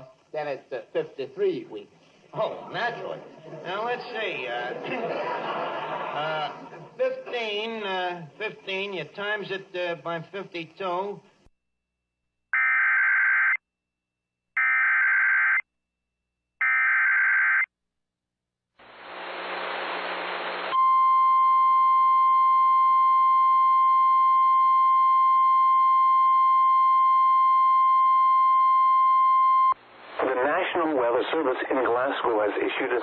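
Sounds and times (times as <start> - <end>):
radio static: 18.8 - 20.8, 29.9 - 33.0.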